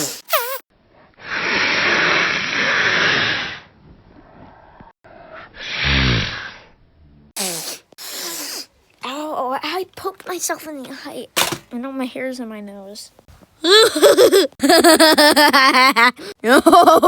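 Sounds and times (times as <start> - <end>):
person sniffing hard: 0.0 - 0.6, 7.4 - 8.8.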